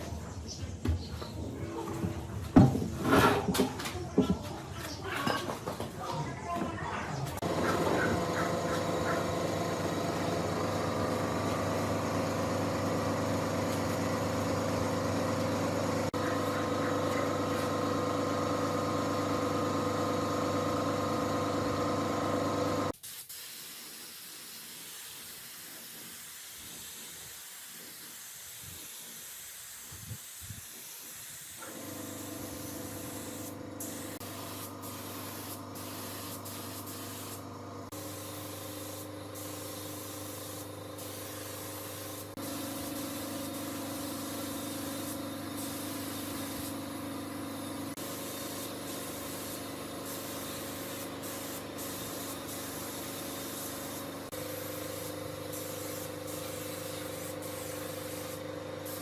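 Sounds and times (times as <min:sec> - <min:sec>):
spray gun hissing: 0:07.4 - 0:20.9, 0:22.6 - 0:59.0
motor humming: 0:07.4 - 0:22.9.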